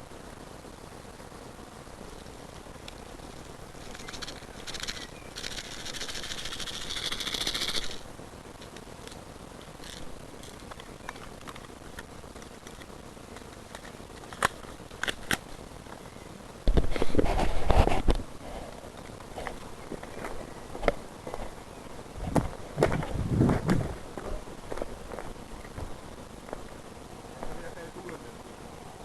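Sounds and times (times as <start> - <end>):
sharp clicks: 8.6 - 15.5.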